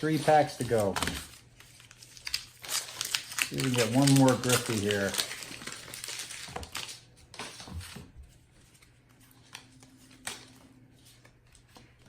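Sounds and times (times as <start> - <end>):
foil wrapper rustling: 0.0 - 8.0
trading cards rustling: 0.0 - 12.0.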